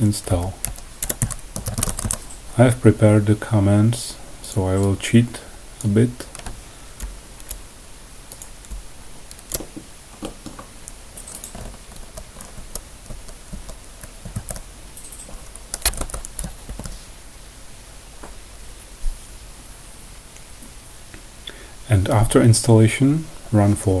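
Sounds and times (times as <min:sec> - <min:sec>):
keyboard typing: 0:00.6 - 0:02.5, 0:08.3 - 0:17.0.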